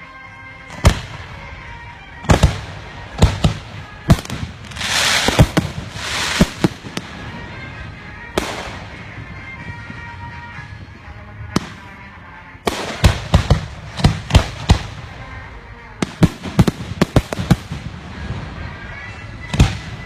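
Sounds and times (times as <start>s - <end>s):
firework shells bursting: 4.1s - 7.0s
firework crackling hiss: 4.2s - 7.4s.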